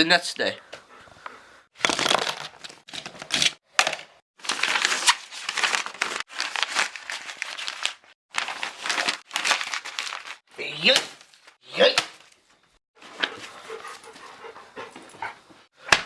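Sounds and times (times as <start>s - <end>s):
paper crumpling: 4.4s - 10.4s.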